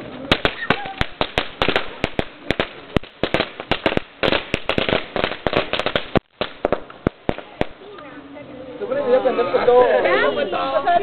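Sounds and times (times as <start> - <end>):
bonfire crackling and popping: 0.0 - 8.2.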